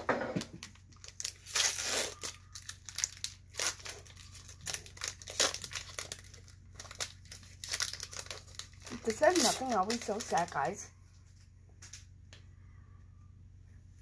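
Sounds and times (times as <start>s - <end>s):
foil wrapper crinkling and tearing: 0.4s - 10.8s.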